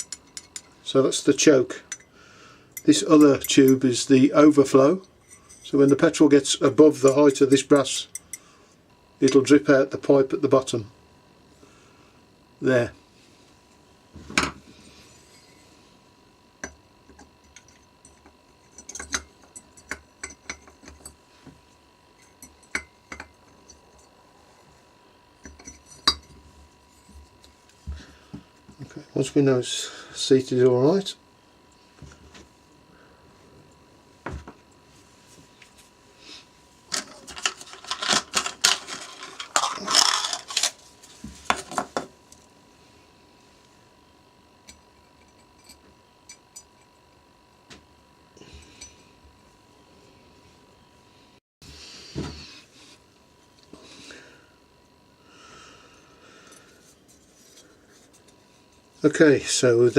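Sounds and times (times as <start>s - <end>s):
small metal parts clinking: 0.0s - 0.8s, 36.9s - 40.9s.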